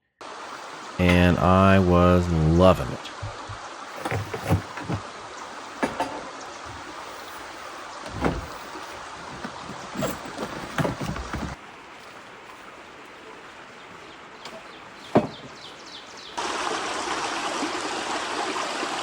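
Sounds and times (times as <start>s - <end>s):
creek water flowing: 0.2s - 19.0s
water splashing: 0.3s - 14.9s.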